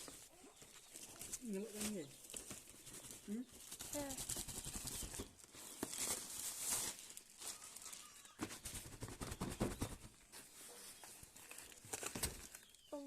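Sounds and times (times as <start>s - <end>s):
packaging crinkling: 0.0s - 8.5s, 11.0s - 12.9s
packaging rustling: 0.0s - 9.2s, 10.1s - 12.9s.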